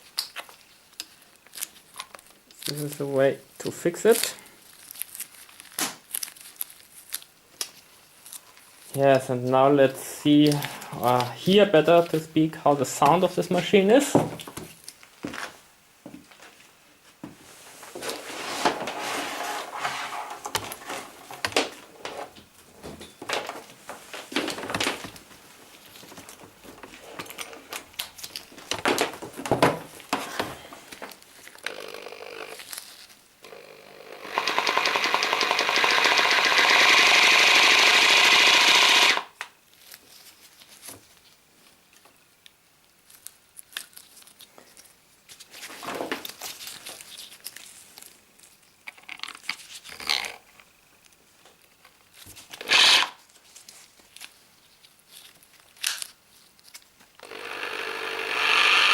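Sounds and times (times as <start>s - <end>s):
hammer drill running: 31.7s - 32.6s, 33.4s - 39.3s, 52.6s - 53.1s, 57.2s - 58.9s.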